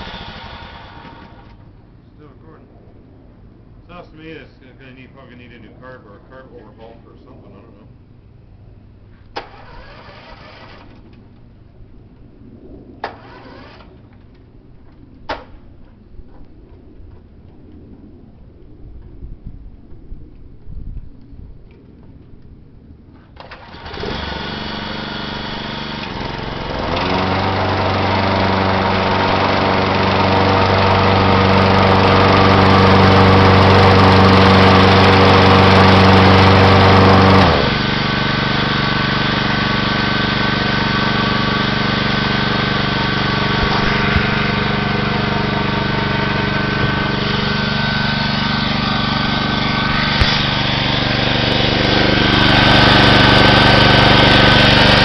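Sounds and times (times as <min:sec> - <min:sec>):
lawn mower engine running: 0:00.0 - 0:01.8, 0:09.2 - 0:11.4, 0:13.0 - 0:14.3, 0:23.4 - 0:55.0.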